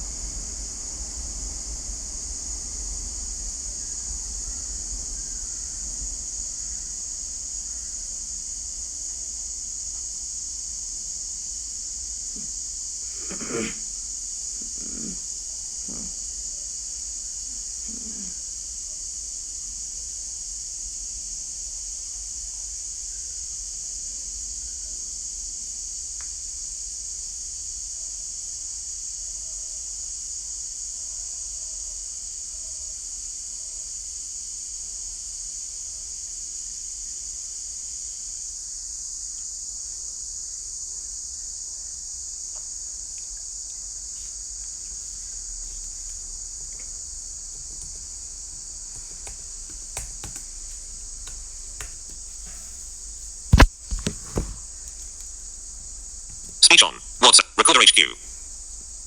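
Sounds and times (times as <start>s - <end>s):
insects trilling: 0.0s - 21.4s.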